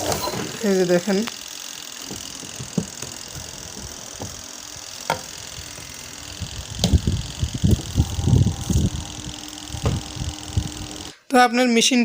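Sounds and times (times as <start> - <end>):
spin dryer humming: 0.0 - 11.2
machine thumping and rattling: 2.0 - 11.1.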